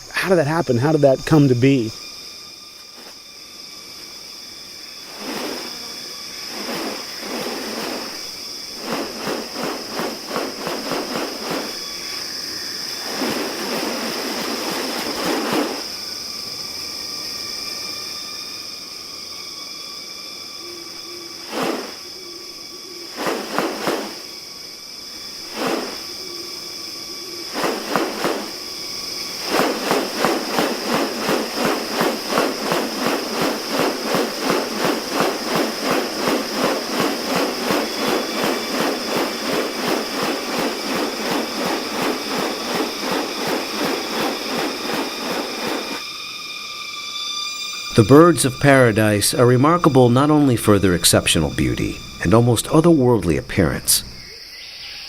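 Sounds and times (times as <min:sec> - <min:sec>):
insects droning: 0:00.0 - 0:55.0
rapid pulsing: 0:05.0 - 0:16.2, 0:21.4 - 0:22.3, 0:23.1 - 0:24.6, 0:25.3 - 0:26.5, 0:27.4 - 0:46.1.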